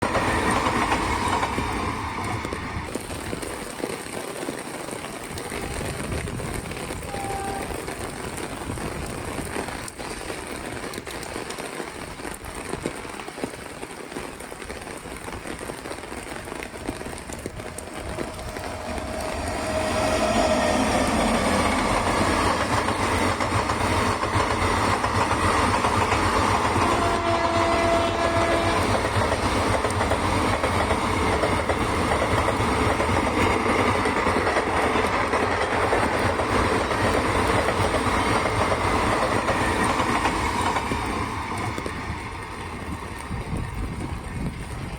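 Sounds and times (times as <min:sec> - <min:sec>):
train rumbling on rails: 0:00.0 - 0:03.8, 0:05.3 - 0:10.1, 0:15.3 - 0:44.9
heavy rain hissing: 0:00.0 - 0:44.9
short train horn notes: 0:07.0 - 0:08.0, 0:17.7 - 0:22.3, 0:26.7 - 0:29.2.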